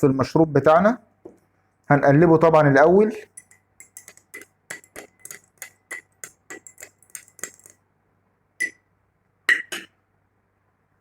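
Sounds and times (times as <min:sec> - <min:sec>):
spoon clinking in a cup: 0:03.1 - 0:07.8, 0:09.5 - 0:09.9.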